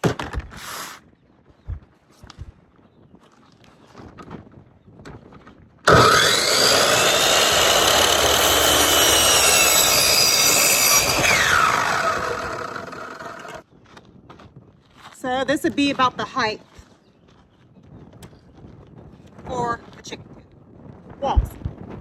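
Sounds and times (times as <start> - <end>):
electric power saw whining: 5.9 - 13.6
saw cutting wooden board: 5.9 - 13.6.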